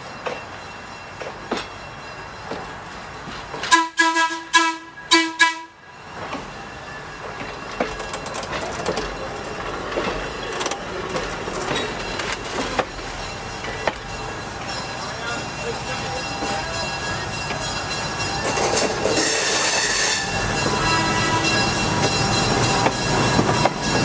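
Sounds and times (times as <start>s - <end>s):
train wheels clicking over rail joints: 0.0s - 4.0s, 6.0s - 24.0s
locomotive air horn blasts: 3.7s - 5.8s, 19.2s - 21.6s.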